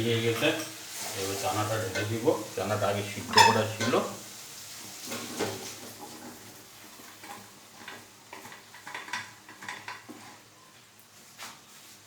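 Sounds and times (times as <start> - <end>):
spoon scraping cooking pan: 0.3 - 4.2, 4.9 - 10.5.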